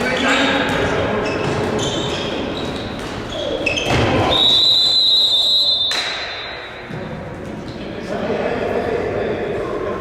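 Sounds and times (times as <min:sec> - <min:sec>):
sneakers squeaking on court: 0:00.0 - 0:04.3
ball bouncing: 0:00.5 - 0:04.2
referee whistle blast: 0:04.2 - 0:06.2.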